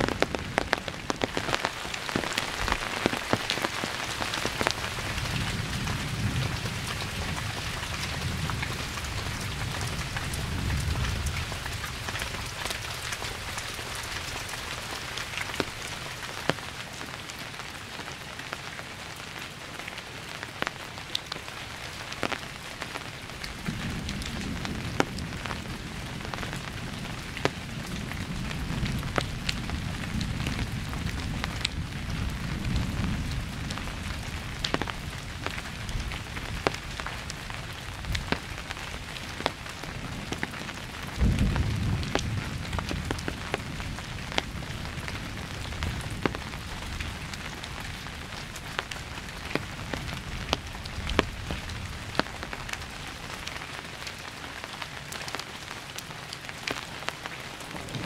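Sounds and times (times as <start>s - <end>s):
thunder rumbling: 0.0s - 15.9s, 23.3s - 53.4s, 57.5s - 58.0s
raindrops ticking close by: 0.0s - 58.0s
steady rain falling: 0.0s - 58.0s.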